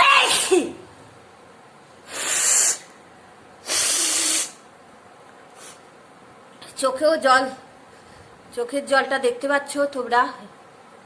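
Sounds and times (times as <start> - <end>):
person sneezing: 0.1 - 0.8, 2.1 - 2.9, 3.6 - 4.6
breathy bursts of air: 2.0 - 2.9, 3.6 - 4.7, 5.5 - 5.9.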